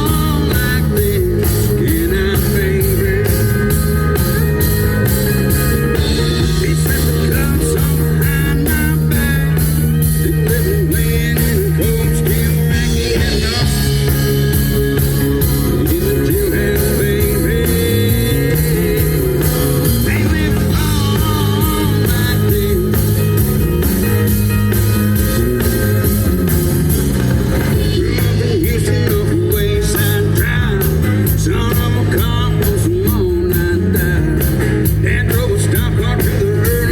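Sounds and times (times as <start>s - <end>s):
rock band playing live: 0.0s - 36.9s.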